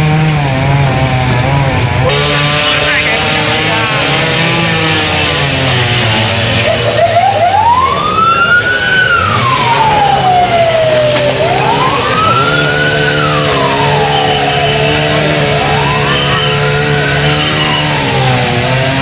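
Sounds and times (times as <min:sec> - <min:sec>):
emergency siren wailing: 0:06.6 - 0:19.0.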